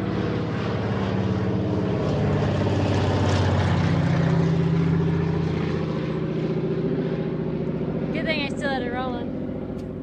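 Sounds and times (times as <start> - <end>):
propeller airplane engine drone: 0.0 - 10.0.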